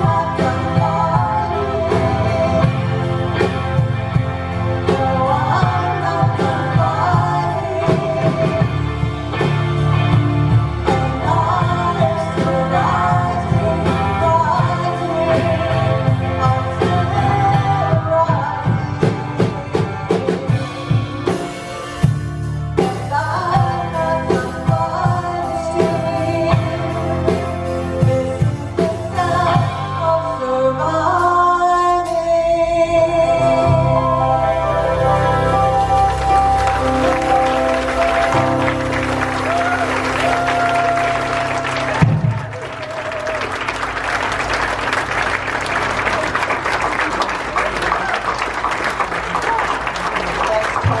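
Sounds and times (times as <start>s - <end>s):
woman singing: 0.0s - 3.0s, 4.8s - 9.0s, 10.8s - 21.0s, 22.8s - 34.6s
band bass and drums: 0.0s - 51.0s.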